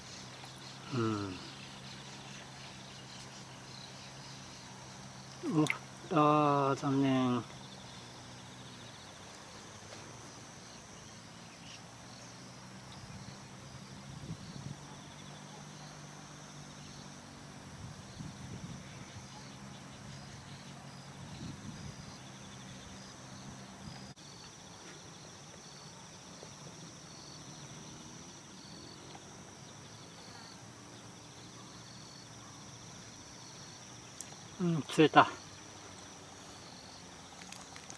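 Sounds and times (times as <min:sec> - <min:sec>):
insects chirping: 0:00.0 - 0:37.9.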